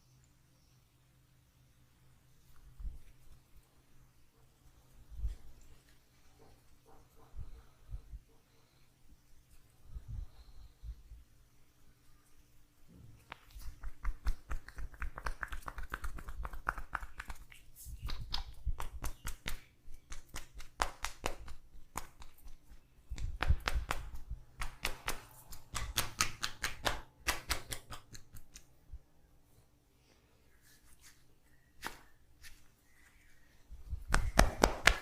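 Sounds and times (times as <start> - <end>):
percussive massage strikes on body: 13.5 - 17.4, 18.1 - 22.5, 23.2 - 28.4, 34.1 - 35.0.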